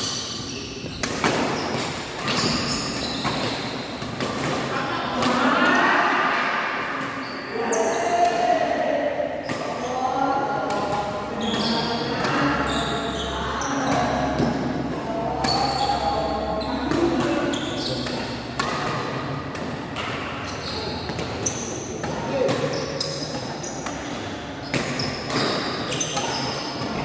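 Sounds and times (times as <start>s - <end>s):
shoe squeaks: 0.0s - 4.0s, 7.1s - 8.2s, 11.3s - 14.3s, 15.4s - 18.2s, 20.4s - 27.0s
racket hitting shuttlecock: 0.2s - 5.8s, 13.8s - 27.0s
people talking: 4.5s - 6.6s, 7.5s - 19.0s.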